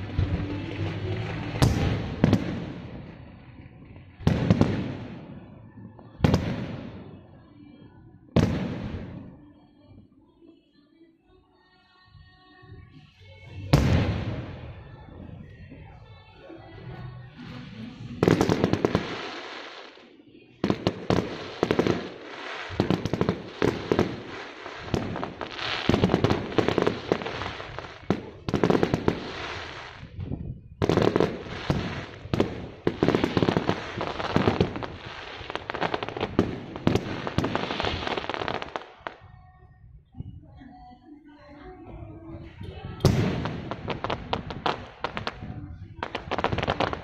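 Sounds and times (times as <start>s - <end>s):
fireworks cracking and banging: 0.0s - 7.4s, 8.4s - 9.4s, 13.7s - 15.9s, 17.4s - 39.3s, 42.8s - 47.0s.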